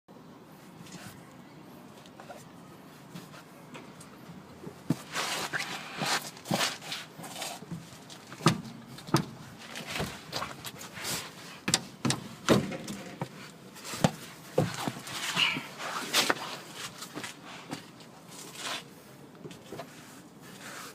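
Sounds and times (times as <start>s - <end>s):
car suspension knocking: 8.4s - 9.4s.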